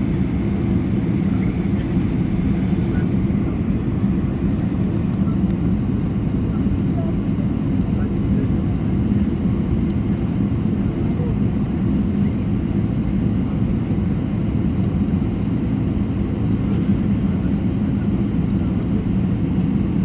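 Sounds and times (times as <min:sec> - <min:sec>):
steady hum: 0:00.0 - 0:09.3
jet engines rumbling in cabin: 0:00.0 - 0:20.0.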